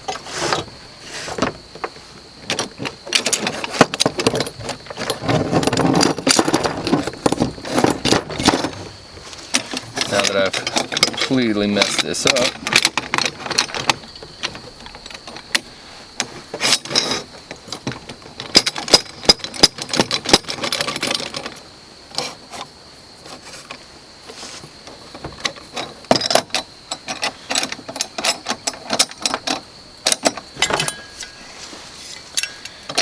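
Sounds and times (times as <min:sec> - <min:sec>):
metal parts clinking and knocking: 0:02.4 - 0:15.7, 0:16.6 - 0:21.6, 0:25.2 - 0:33.0.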